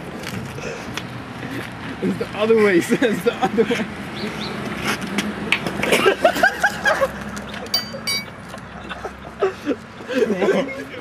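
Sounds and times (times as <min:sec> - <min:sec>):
sharp metallic clinks ringing: 0:07.8 - 0:08.4.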